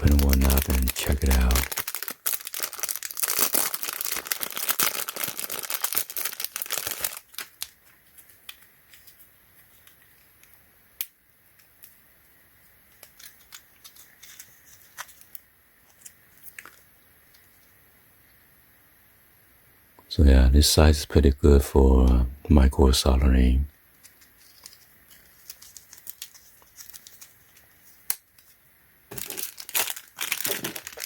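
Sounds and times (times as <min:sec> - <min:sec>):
packaging tearing and crinkling: 0:00.0 - 0:10.3, 0:12.9 - 0:16.8, 0:24.0 - 0:28.2, 0:29.1 - 0:31.0.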